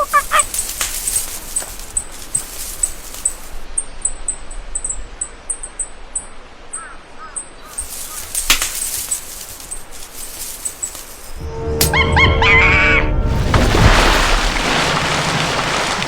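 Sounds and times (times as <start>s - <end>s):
steady hiss: 7.6s - 11.5s.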